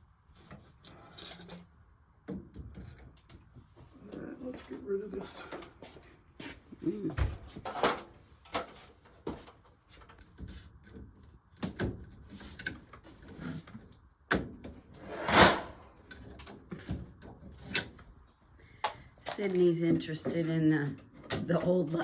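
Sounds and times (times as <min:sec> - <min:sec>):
light fixture scraping: 0:15.0 - 0:16.0.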